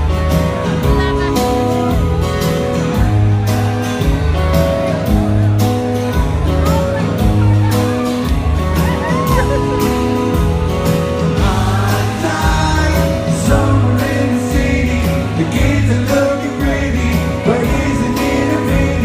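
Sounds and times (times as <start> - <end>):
live rock band playing: 0.0 - 19.0
steady drum beat: 0.0 - 19.0
person singing: 11.2 - 19.0.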